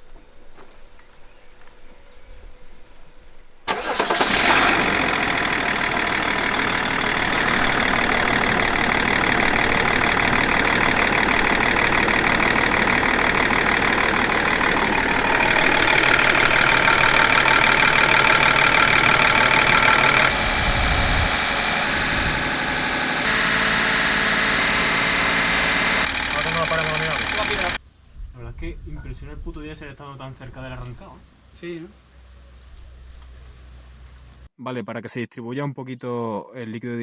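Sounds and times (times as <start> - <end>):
diesel engine starting and running: 3.6 - 27.8.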